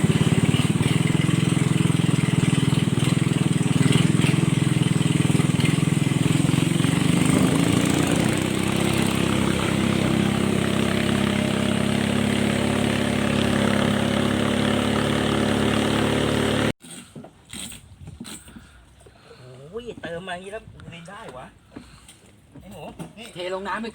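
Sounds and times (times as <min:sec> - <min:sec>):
boat engine running: 0:00.0 - 0:16.8.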